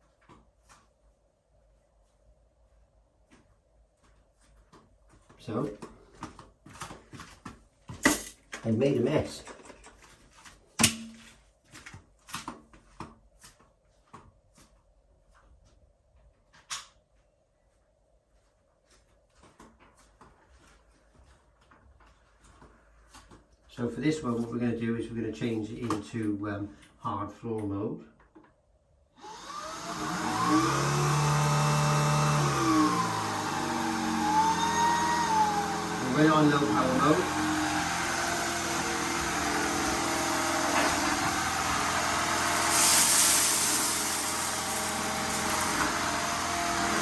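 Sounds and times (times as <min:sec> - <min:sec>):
stick vacuum motor whine: 0:29.2 - 0:47.0.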